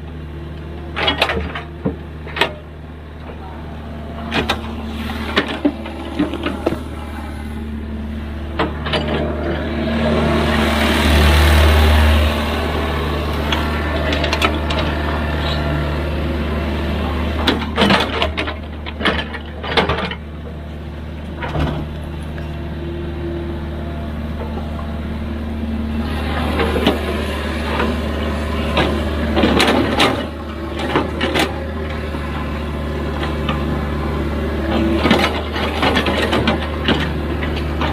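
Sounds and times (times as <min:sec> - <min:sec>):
excavator diesel engine running: 0:00.0 - 0:37.9
metallic clanks and knocks: 0:08.5 - 0:09.6.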